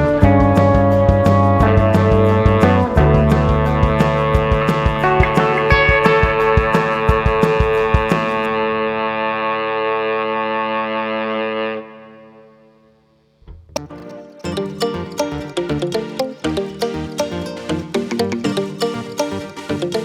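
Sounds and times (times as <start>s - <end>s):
background music with drum beat: 0.0s - 8.5s, 13.8s - 20.0s
held chord: 13.8s - 20.0s.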